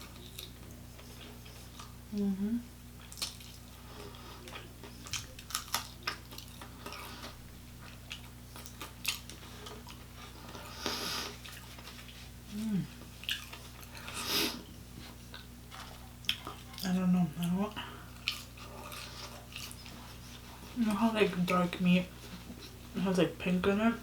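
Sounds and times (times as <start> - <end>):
crunching fried chicken: 3.0 - 7.2.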